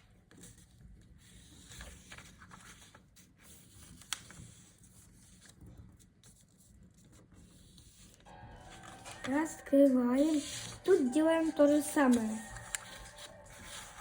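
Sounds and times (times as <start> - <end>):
paper being folded and creased: 0.0 - 9.6, 10.2 - 14.0
sharp paper tick: 1.4 - 7.5, 11.4 - 14.0.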